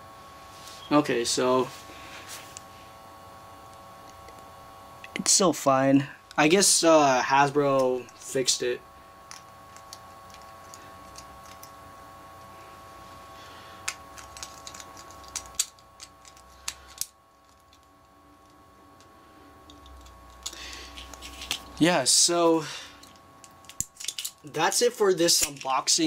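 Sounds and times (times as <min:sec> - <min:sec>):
faint steady hum: 0:00.0 - 0:26.0
plastic parts clicking: 0:23.1 - 0:24.3.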